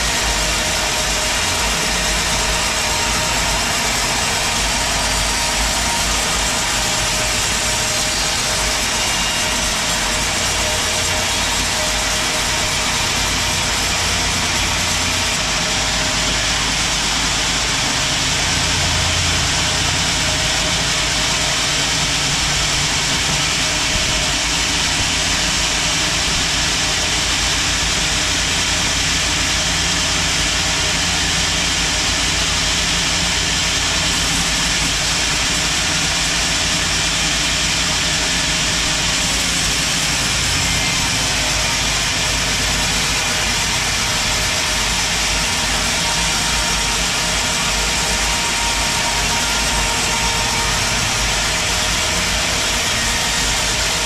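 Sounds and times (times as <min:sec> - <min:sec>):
sawmill machinery running: 0:00.0 - 0:54.0.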